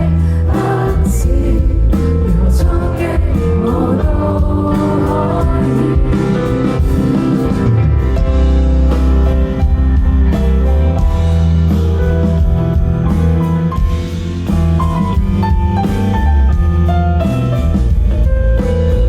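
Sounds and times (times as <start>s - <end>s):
person singing: 0.0s - 7.0s
indie pop band playing: 0.0s - 19.0s.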